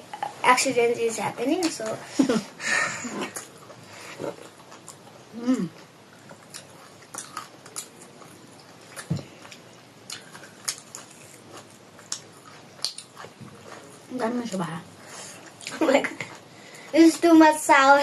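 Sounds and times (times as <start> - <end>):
chewing and biting food: 6.1 - 14.0
mouth clicks and smacks: 12.1 - 13.2.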